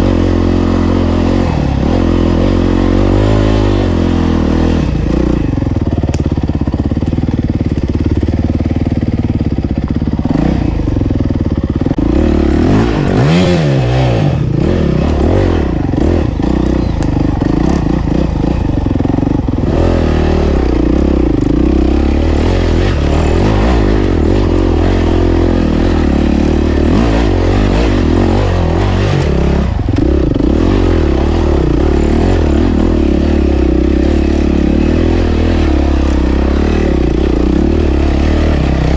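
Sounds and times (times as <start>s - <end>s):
dirt bike engine revving: 0.0s - 38.9s
bike rattling over rough ground: 5.3s - 12.1s.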